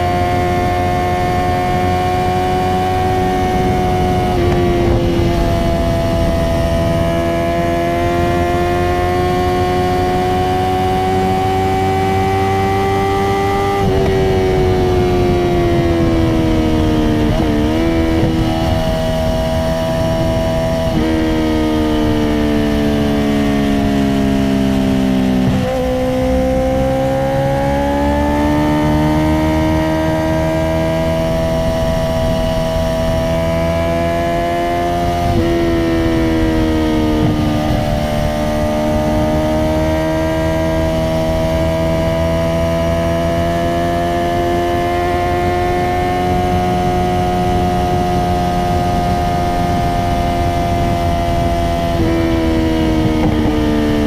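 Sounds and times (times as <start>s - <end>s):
motorcycle engine cruising: 0.0s - 54.0s.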